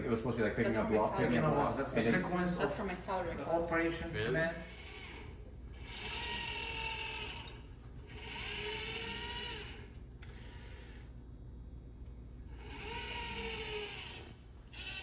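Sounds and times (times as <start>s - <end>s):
robot arm motors whining: 4.7s - 11.1s, 12.5s - 15.0s.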